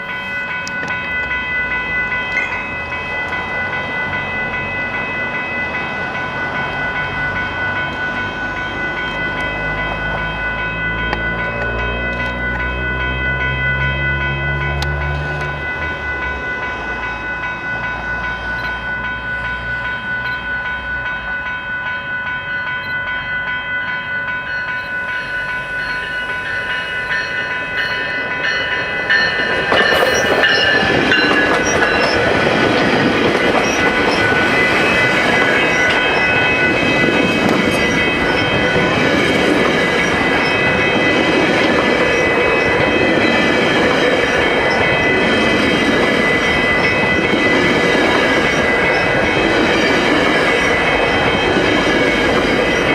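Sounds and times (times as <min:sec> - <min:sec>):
crossing bells ringing: 0:00.0 - 0:52.9
train wheels clattering on rails: 0:25.8 - 0:52.9.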